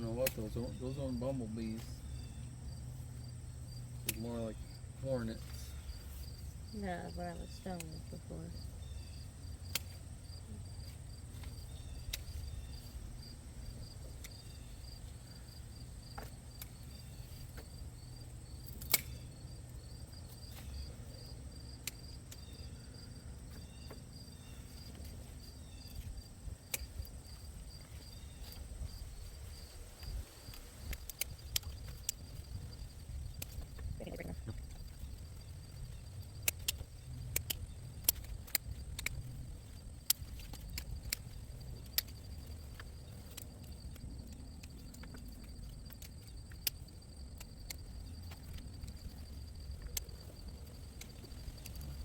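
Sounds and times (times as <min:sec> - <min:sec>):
crickets chirping: 0:00.0 - 0:52.0
sharp clicks: 0:04.0 - 0:04.4, 0:18.6 - 0:19.2, 0:35.8 - 0:49.2.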